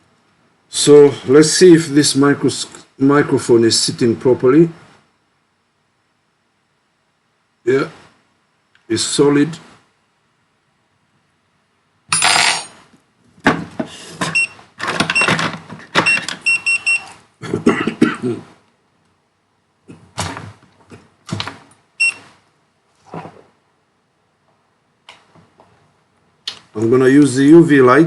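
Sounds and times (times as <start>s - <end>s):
objects clattering and rustling: 12.5s - 16.5s.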